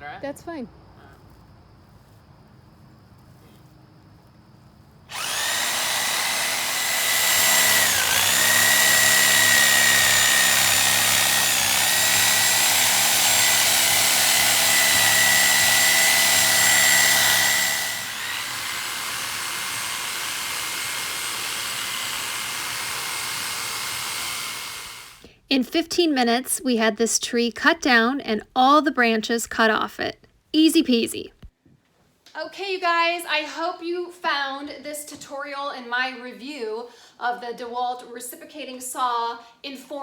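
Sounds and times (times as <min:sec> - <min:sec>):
reciprocating saw cutting wood: 0:05.1 - 0:25.3.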